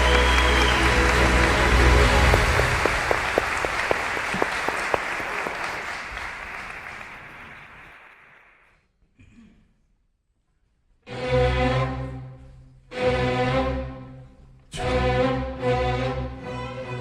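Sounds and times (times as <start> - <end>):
audience applauding: 0.0 - 8.7.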